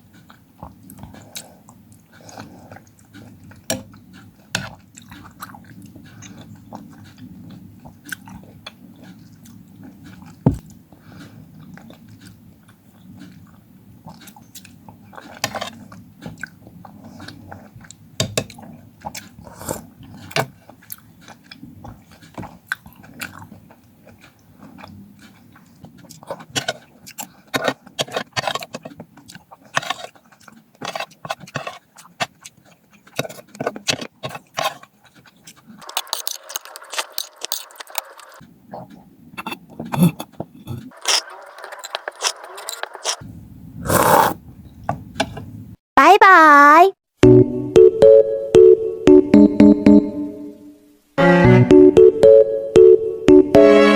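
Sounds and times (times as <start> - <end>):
fruit crunching and chewing: 0.0 - 43.2, 43.9 - 44.4.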